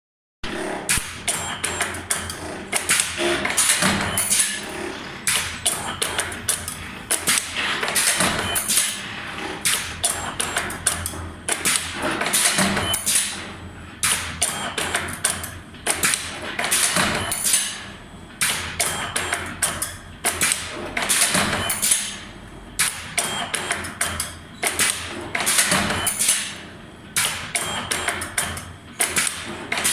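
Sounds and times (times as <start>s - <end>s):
wire bending machine knocks: 2.8s - 10.2s, 18.4s - 22.2s, 24.0s - 26.6s.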